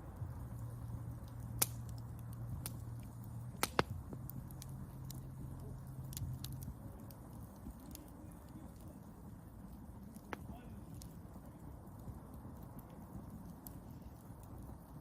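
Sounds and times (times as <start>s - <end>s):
low hum: 0.0s - 9.2s
campfire crackling: 0.0s - 15.0s
fire popping: 0.0s - 15.0s.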